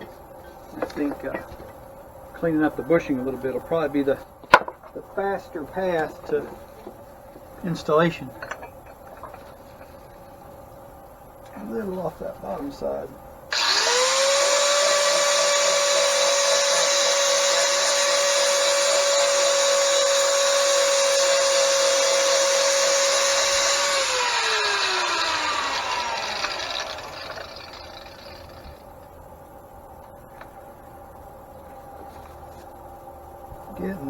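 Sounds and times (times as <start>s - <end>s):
electric grinder whining: 13.5s - 28.8s
grinding metal: 13.5s - 28.8s.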